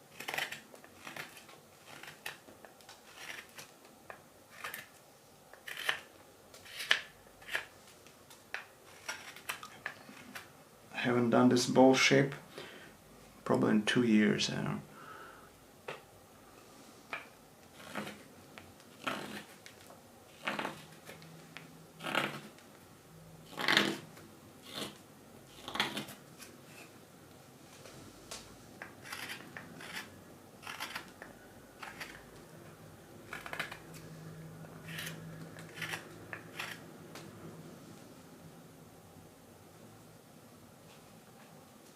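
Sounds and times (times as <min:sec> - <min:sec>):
hook knife rasping through wood: 0:18.9 - 0:19.5, 0:23.5 - 0:24.0.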